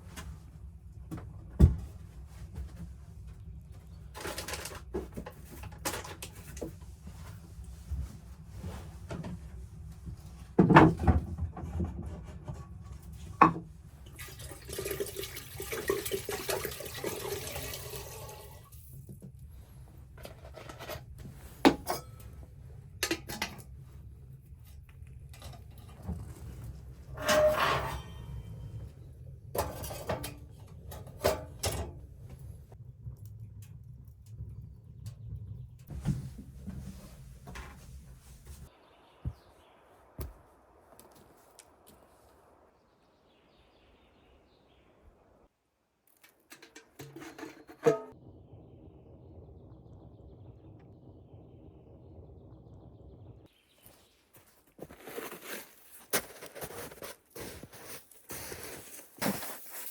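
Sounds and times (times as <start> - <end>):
objects knocking and clattering: 10.6 - 15.3, 46.1 - 48.2.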